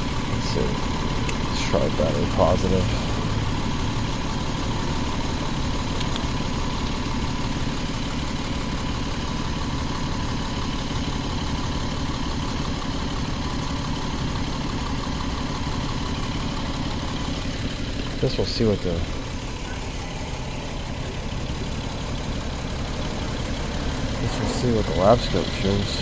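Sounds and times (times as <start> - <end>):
car engine idling: 0.0 - 26.0.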